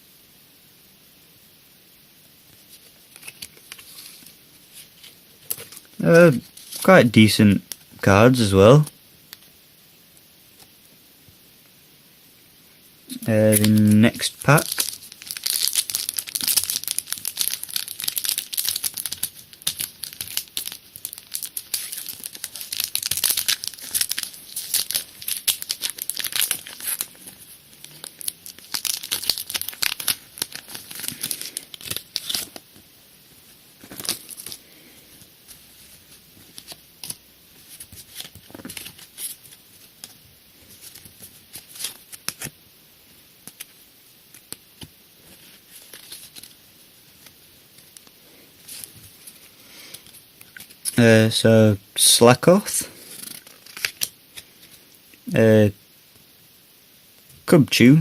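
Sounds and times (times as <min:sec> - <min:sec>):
foil wrapper crinkling and tearing: 0:02.7 - 0:08.4, 0:13.1 - 0:32.8, 0:33.8 - 0:42.6, 0:43.4 - 0:46.6, 0:47.2 - 0:51.0, 0:52.8 - 0:54.8.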